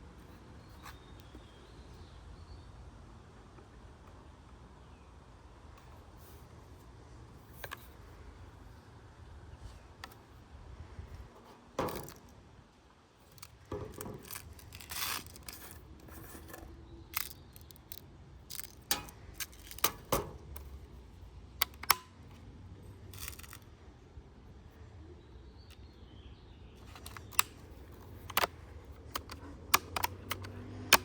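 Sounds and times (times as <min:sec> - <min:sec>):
air rifle metallic clicks: 0:13.3 - 0:20.9, 0:21.6 - 0:22.5, 0:23.1 - 0:23.7, 0:26.8 - 0:31.0.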